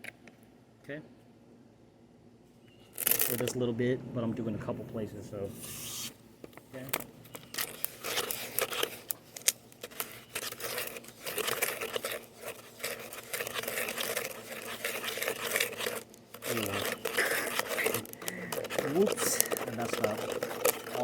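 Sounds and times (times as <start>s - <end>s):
concrete mix scraping in container: 6.8s - 21.0s.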